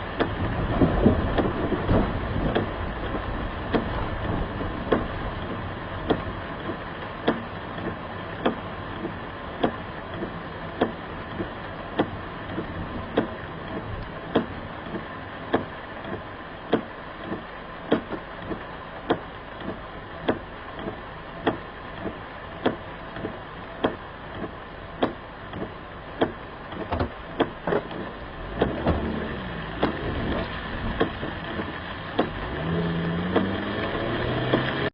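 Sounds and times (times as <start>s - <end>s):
car engine from inside cabin: 0.0s - 34.9s
engine revving: 28.4s - 34.9s.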